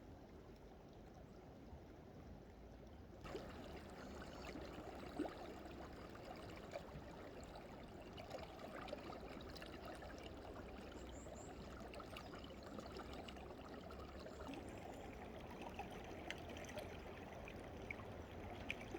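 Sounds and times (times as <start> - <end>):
water trickling under ice: 3.2 - 18.9.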